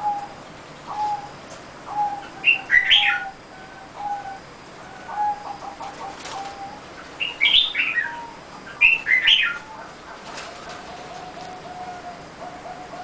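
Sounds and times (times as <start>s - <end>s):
small bird chirping: 0.0s - 10.0s
dove cooing: 0.0s - 13.0s.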